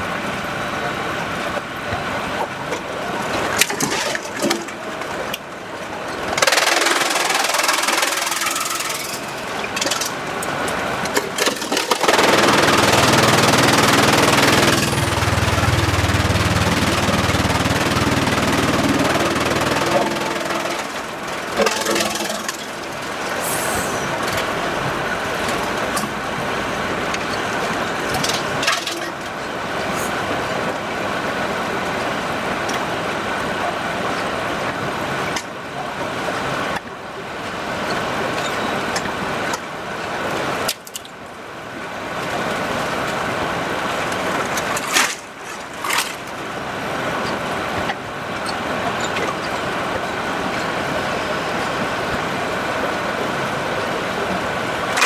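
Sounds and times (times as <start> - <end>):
sawmill machinery running: 3.2 - 32.4, 47.0 - 55.0.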